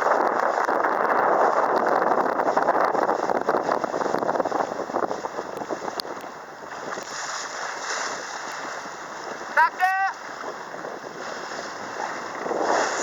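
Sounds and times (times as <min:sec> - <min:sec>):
water rushing and splashing: 0:00.0 - 0:13.0
wind buffeting microphone: 0:00.0 - 0:13.0.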